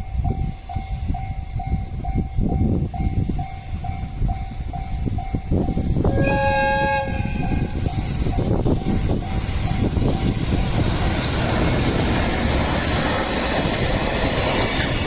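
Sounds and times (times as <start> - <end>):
level-crossing warning bell: 0.0 - 10.8
freight train rumbling: 0.0 - 15.0
train horn: 6.0 - 7.9.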